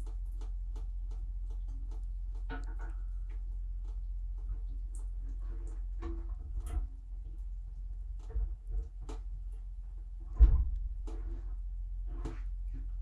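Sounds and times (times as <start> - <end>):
light ticks and clicks: 0.0 - 6.8.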